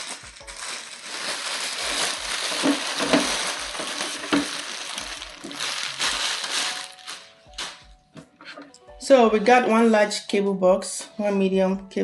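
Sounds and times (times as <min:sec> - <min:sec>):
packaging rustling and crinkling: 0:00.0 - 0:07.9.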